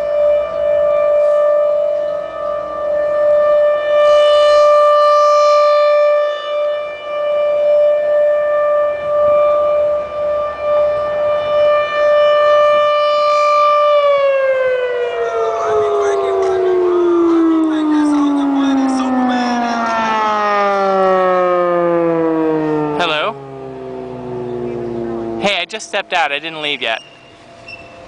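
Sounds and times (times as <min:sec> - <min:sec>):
tornado siren steady tone: 0:00.0 - 0:28.0.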